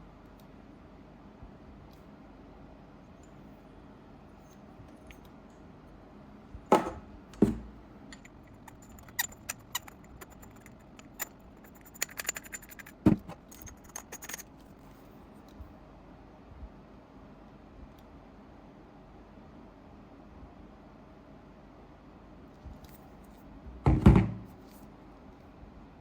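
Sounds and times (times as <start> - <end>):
loud knocks: 6.7 - 7.8, 23.7 - 24.5
small hard clicks and rattles: 8.1 - 14.9.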